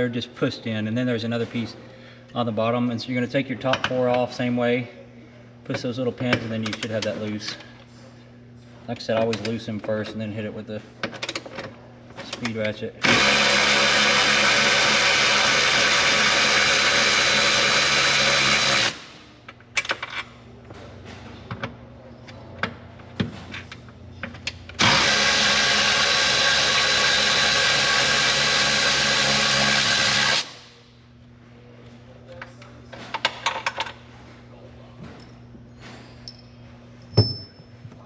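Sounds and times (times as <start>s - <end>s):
electric ratchet spinning bolts: 13.0s - 19.1s, 24.8s - 30.6s.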